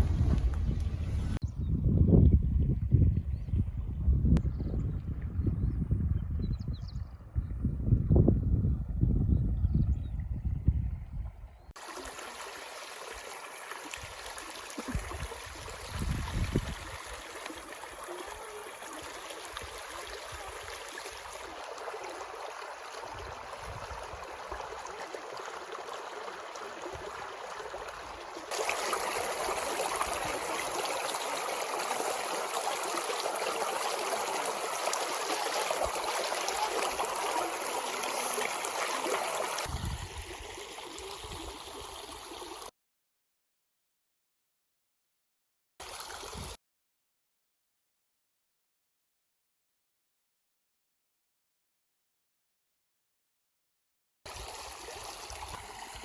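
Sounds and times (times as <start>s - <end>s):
water trickling over rocks: 11.8s - 42.7s, 54.3s - 56.0s.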